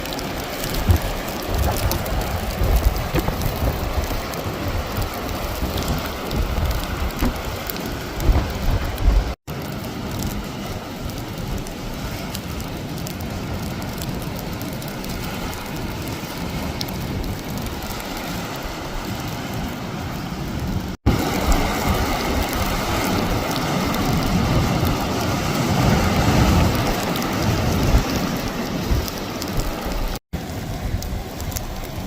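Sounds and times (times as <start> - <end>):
heavy storm rain: 0.0 - 32.0.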